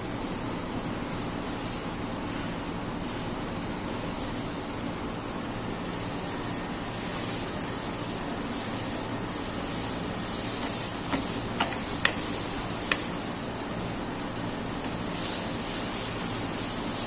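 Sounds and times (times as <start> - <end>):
steady hissing: 3.6 - 17.0
sharp taps: 11.1 - 13.2.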